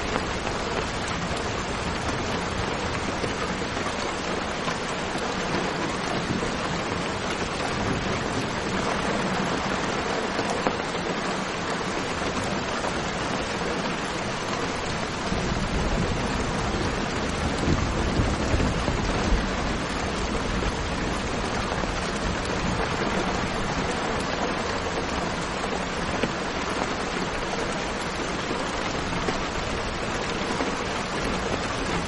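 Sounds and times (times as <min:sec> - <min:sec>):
steady rain hiss: 0:00.0 - 0:32.0.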